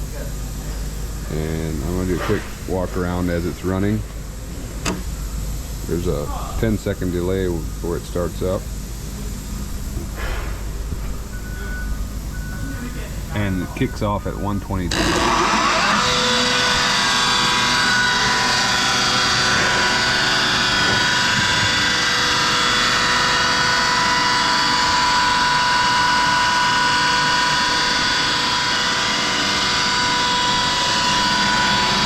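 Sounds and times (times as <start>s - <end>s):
air compressor running with whine: 0.0s - 32.0s.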